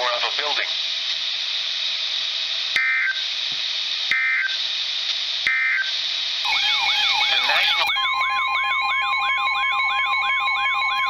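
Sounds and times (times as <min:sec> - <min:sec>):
radio static hiss: 0:00.0 - 0:08.1
warbling digital data tones: 0:05.5 - 0:11.0.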